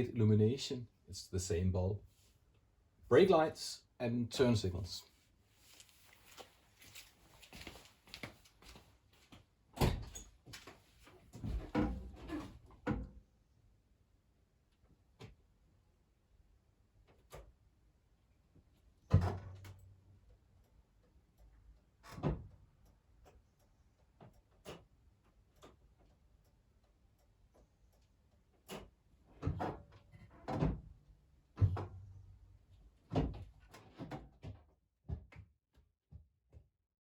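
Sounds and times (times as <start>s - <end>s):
knocks and clunks: 11.3s - 13.2s, 31.6s - 32.1s, 33.1s - 35.4s.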